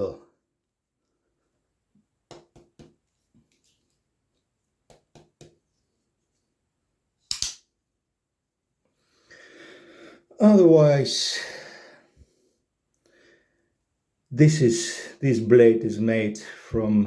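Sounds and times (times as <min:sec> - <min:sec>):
folding knife ratcheting clicks: 0:07.3 - 0:07.6.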